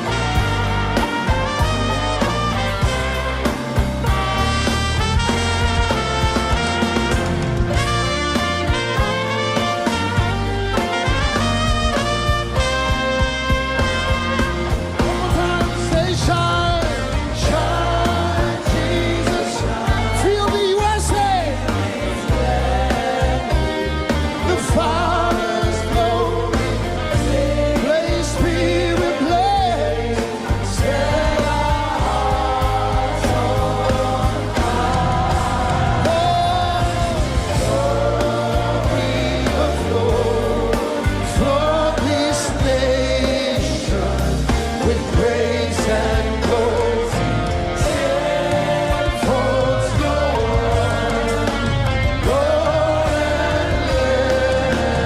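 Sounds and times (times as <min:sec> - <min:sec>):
live worship band: 0:00.0 - 0:55.0
voices singing: 0:14.9 - 0:55.0.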